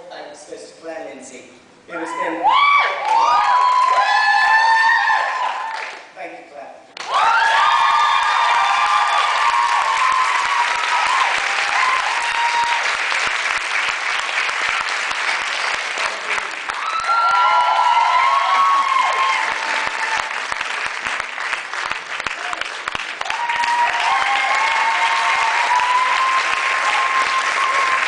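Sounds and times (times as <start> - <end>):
audience applauding: 2.9 - 6.1, 7.0 - 28.0
voices whooping: 16.8 - 20.3, 23.2 - 28.0.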